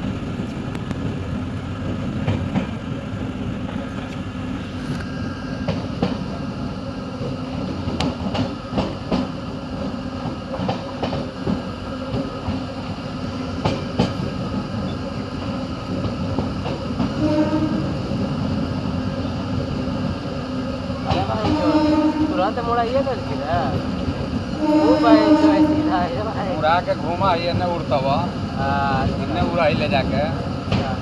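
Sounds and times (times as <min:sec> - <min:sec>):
train rumbling along track: 0:00.0 - 0:31.0
wheels clacking over rail joints: 0:25.2 - 0:31.0.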